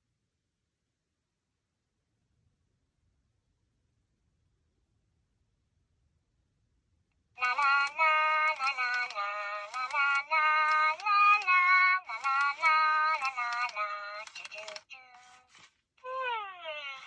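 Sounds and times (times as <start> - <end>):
electronic toy singing a tune: 7.4 - 17.0.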